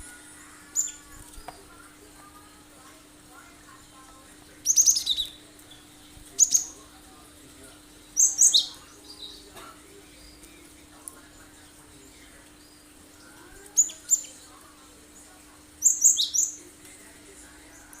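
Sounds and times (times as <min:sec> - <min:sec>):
bird singing high sharp notes: 0:04.6 - 0:05.8.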